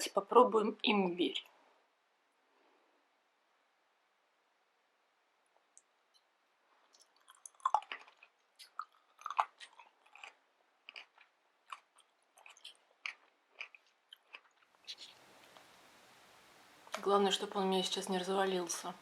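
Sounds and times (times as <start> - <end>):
chewing with wet mouth clicks: 6.9 - 15.6.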